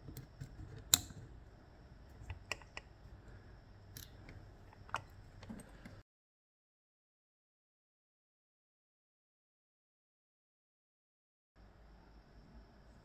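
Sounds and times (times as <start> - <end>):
small metallic clicks and taps: 0.0 - 1.3, 2.2 - 3.0, 3.9 - 6.0.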